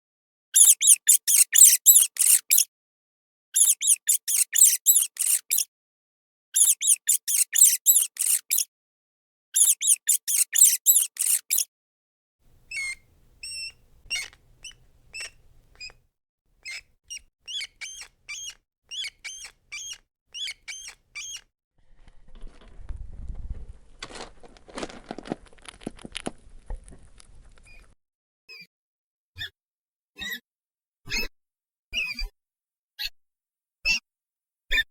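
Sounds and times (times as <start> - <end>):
rat squeaking: 0.6 - 2.7, 3.6 - 5.7, 6.6 - 8.7, 9.6 - 11.7, 12.7 - 16.0, 16.6 - 21.5, 27.6 - 27.9
scratching rustling noise: 21.8 - 28.0.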